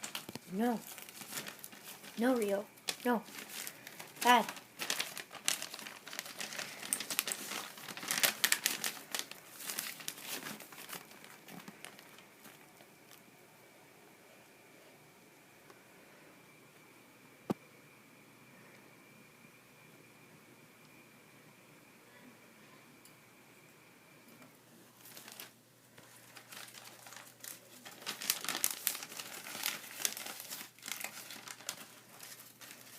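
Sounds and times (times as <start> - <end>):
crinkling and tearing: 0.0 - 13.3, 25.0 - 32.9.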